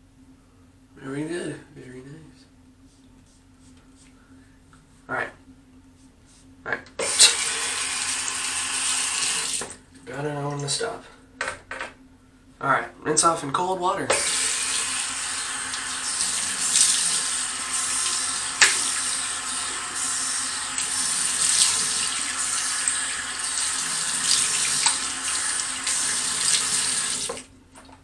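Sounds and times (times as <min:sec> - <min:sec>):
tap running water: 0:07.0 - 0:09.8, 0:14.1 - 0:28.0.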